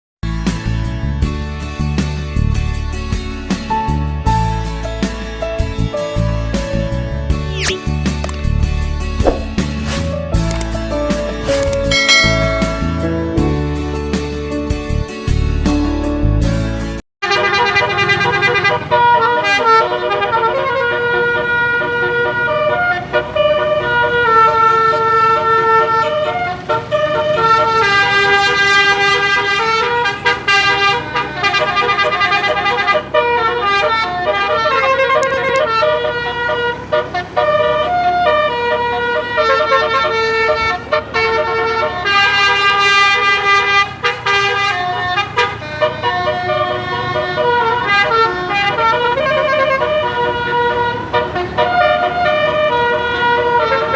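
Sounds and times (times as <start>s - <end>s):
bus musical air horn melody: 9.4s - 15.0s, 17.2s - 53.9s.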